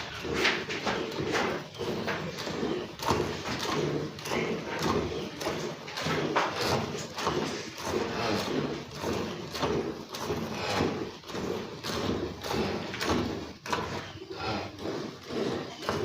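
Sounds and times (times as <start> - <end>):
milk squirting into metal pail: 0.0 - 16.0.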